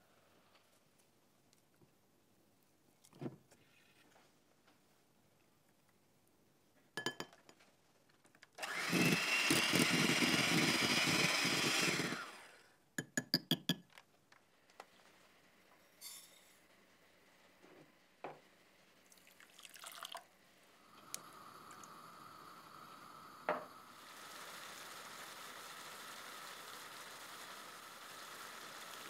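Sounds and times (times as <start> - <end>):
electric blender running: 8.6 - 12.6, 20.8 - 29.0.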